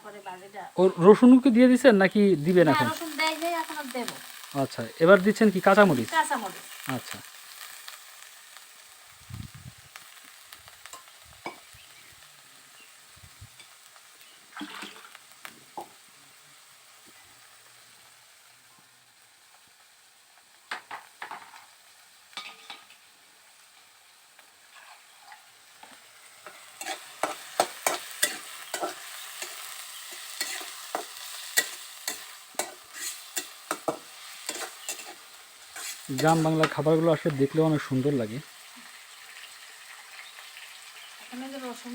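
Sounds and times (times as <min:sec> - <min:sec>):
onions sizzling in oil: 0:00.0 - 0:41.9
spoon stirring in pan: 0:24.7 - 0:36.8.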